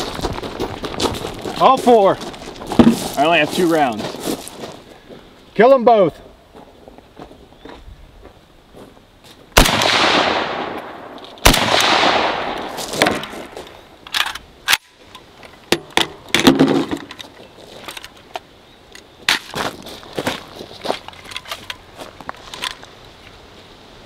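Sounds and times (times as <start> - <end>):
rifle shots echoing: 9.6 - 13.6.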